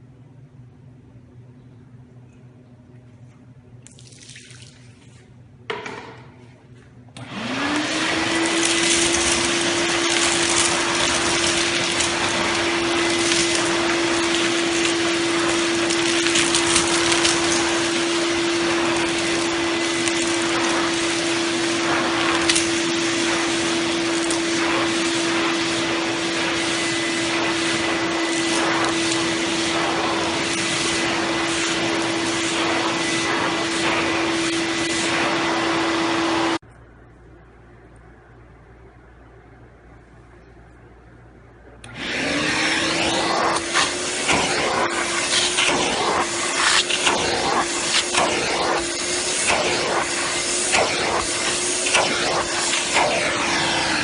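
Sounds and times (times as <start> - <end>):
vacuum cleaner running: 7.1 - 36.6, 41.8 - 54.0.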